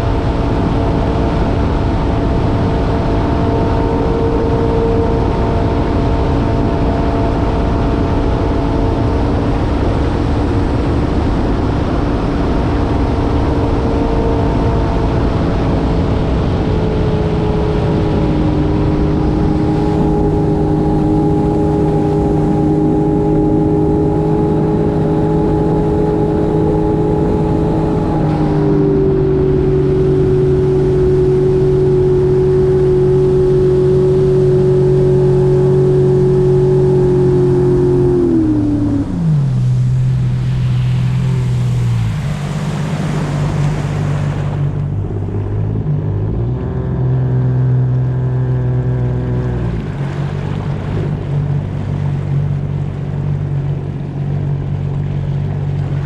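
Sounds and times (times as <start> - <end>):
jet ski engine running: 0.0 - 56.0
rushing water: 0.0 - 56.0.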